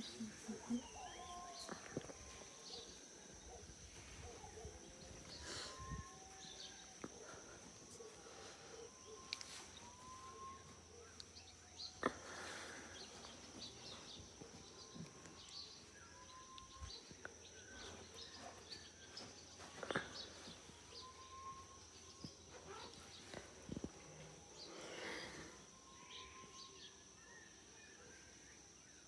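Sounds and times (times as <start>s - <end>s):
faint bird calls: 0.0s - 28.2s.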